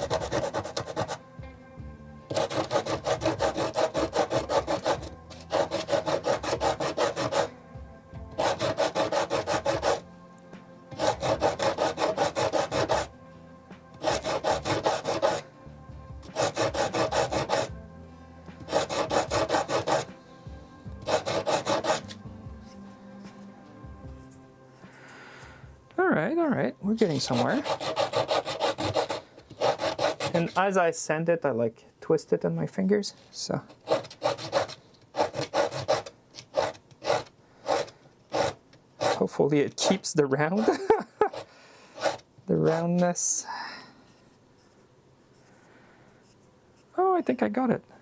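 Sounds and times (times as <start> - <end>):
sandpaper rubbing on wood: 0.0 - 1.2, 2.3 - 7.5, 8.4 - 10.0, 10.9 - 13.1, 14.0 - 15.4, 16.3 - 17.7, 18.6 - 20.1, 21.0 - 22.2, 27.1 - 30.6, 33.8 - 40.0, 40.6 - 43.0.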